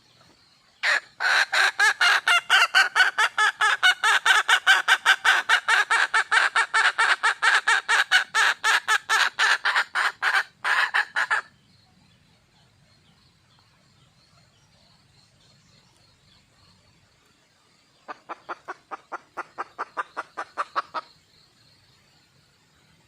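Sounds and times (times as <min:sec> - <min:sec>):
hen clucking rapidly: 0:00.8 - 0:11.5, 0:18.1 - 0:21.1.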